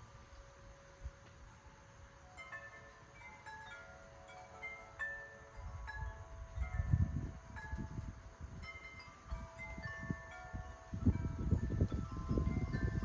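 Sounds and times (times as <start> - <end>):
wind chimes ringing: 0.0 - 13.0
wind buffeting microphone: 4.4 - 13.0.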